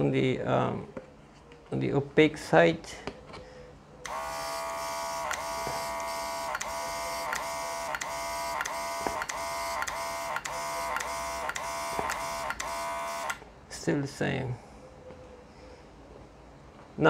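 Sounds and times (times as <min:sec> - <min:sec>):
compressor high-pitched whine: 0:04.0 - 0:13.4.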